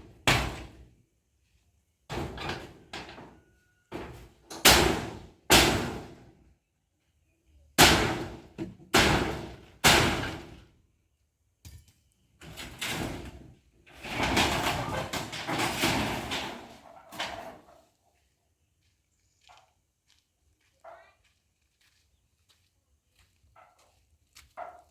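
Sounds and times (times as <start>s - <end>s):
structure crashing and rattling: 2.1s - 6.3s, 7.8s - 10.7s, 12.4s - 17.8s.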